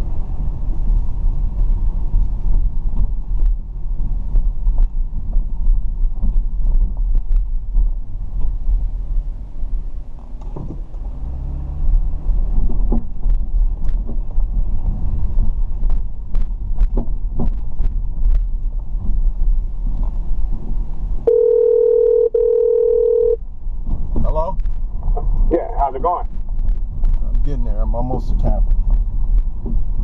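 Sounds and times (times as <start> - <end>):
car driving rumble: 0.0 - 30.0
electronic tone: 21.3 - 23.4.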